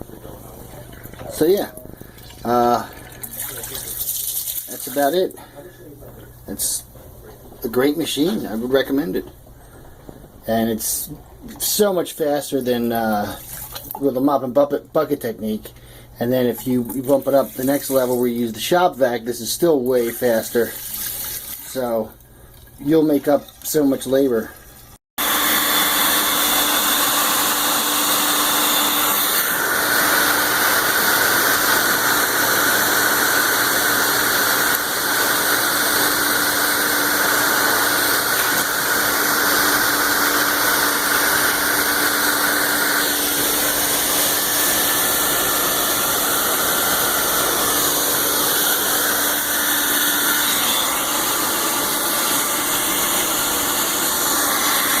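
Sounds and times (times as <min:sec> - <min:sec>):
wet dry vacuum motor whine: 0:25.2 - 0:55.0.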